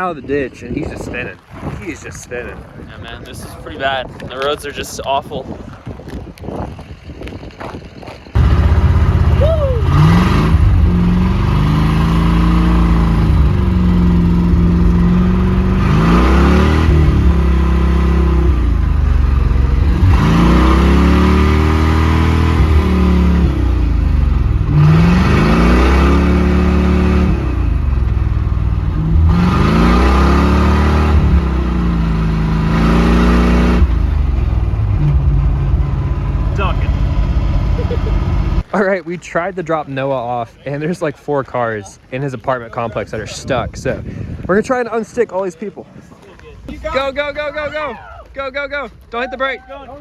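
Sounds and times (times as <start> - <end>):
vehicle engine revving: 8.3 - 38.7.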